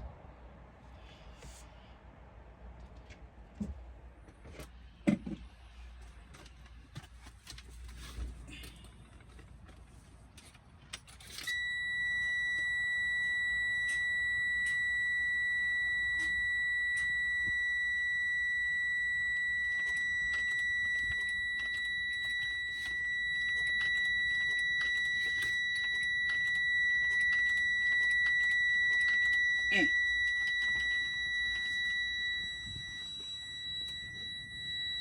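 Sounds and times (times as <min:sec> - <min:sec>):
high-pitched warning buzzer: 0:11.5 - 0:35.0.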